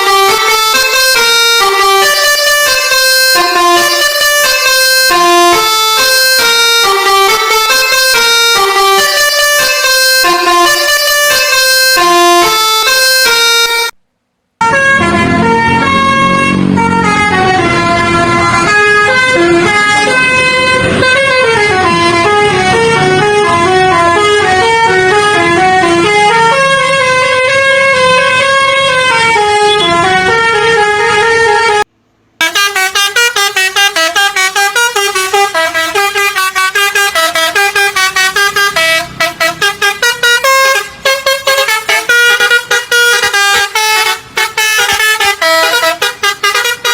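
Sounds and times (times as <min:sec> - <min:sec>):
multi-tone air horns melody: 0:00.0 - 0:14.0, 0:14.6 - 0:46.9
horn playing short choppy notes: 0:32.4 - 0:46.9.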